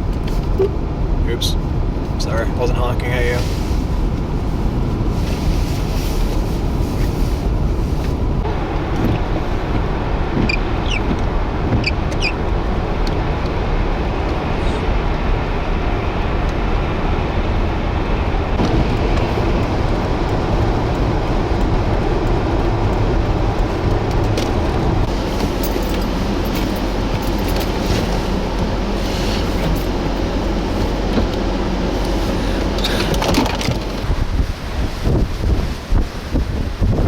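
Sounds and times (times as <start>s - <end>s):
strong wind buffeting microphone: 0.0s - 37.0s.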